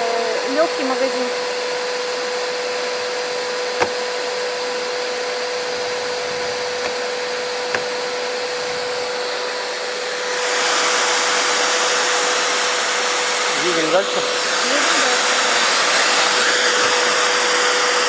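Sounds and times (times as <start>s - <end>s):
vacuum blower motor whine: 0.0s - 18.0s
light knocks: 3.8s - 4.1s, 5.7s - 9.2s.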